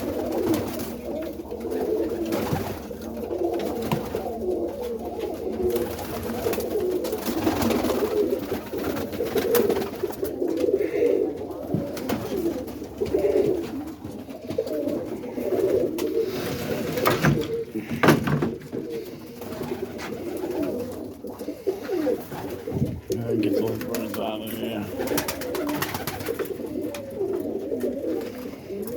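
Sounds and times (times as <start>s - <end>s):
pigeons cooing: 0.0s - 28.9s.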